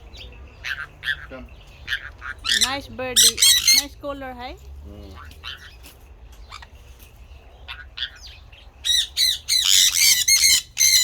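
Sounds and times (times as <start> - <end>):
bird chirping: 0.0 - 4.0, 5.0 - 11.0
bird squawking harshly: 8.9 - 11.0.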